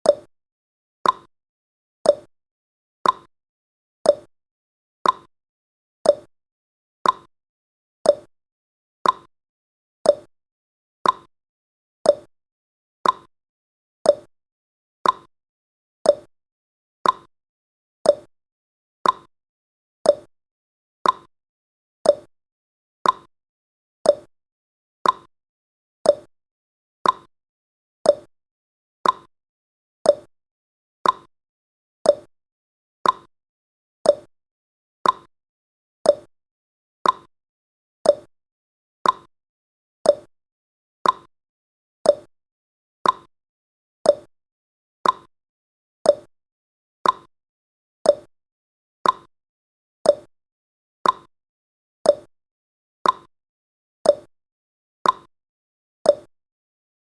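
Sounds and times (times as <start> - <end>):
timer ticking clicks: 0.0 - 0.3, 1.0 - 1.3, 2.0 - 2.3, 3.0 - 3.3, 4.0 - 4.3, 5.0 - 5.3, 6.0 - 6.3, 7.0 - 7.3, 8.0 - 8.3, 9.0 - 9.3, 10.0 - 10.3, 11.0 - 11.3, 12.0 - 12.3, 13.0 - 13.3, 14.0 - 14.3, 15.0 - 15.3, 16.0 - 16.3, 17.0 - 17.3, 18.0 - 18.3, 19.0 - 19.3, 20.0 - 20.3, 21.0 - 21.3, 22.0 - 22.3, 23.0 - 23.3, 24.0 - 24.3, 25.0 - 25.3, 26.0 - 26.3, 27.0 - 27.3, 28.0 - 28.3, 29.0 - 29.3, 30.0 - 30.3, 31.0 - 31.3, 32.0 - 32.3, 33.0 - 33.3, 34.0 - 34.3, 35.0 - 35.3, 36.0 - 36.3, 37.0 - 37.3, 38.0 - 38.3, 39.0 - 39.3, 40.0 - 40.3, 41.0 - 41.3, 42.0 - 42.3, 43.0 - 43.3, 44.0 - 44.3, 45.0 - 45.3, 46.0 - 46.3, 47.0 - 47.3, 48.0 - 48.3, 49.0 - 49.3, 50.0 - 50.3, 51.0 - 51.3, 52.0 - 52.3, 53.0 - 53.3, 54.0 - 54.3, 55.0 - 55.3, 56.1 - 56.3.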